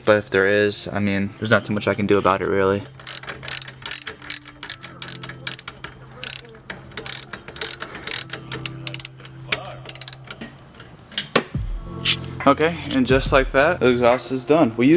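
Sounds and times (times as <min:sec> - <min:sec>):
hand ratchet clicking: 0:03.0 - 0:11.0.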